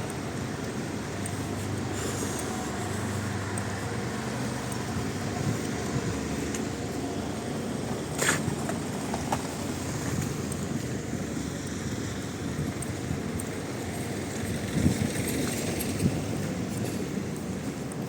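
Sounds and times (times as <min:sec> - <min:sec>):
street engines rumbling: 0:00.0 - 0:18.0.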